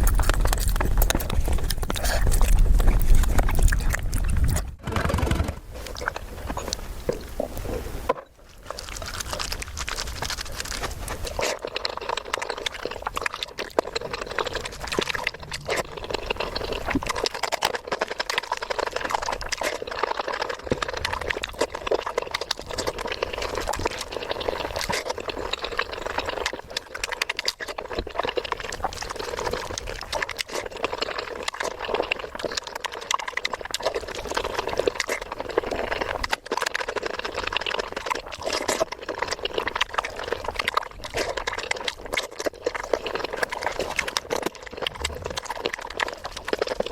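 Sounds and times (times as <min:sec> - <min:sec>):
mouth clicks: 0:00.0 - 0:31.8
wet chewing and slurping: 0:00.0 - 0:46.9.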